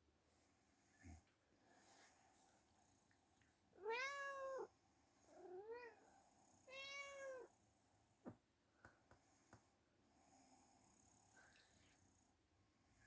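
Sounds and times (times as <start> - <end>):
cat meowing: 3.8 - 4.7, 6.7 - 7.5.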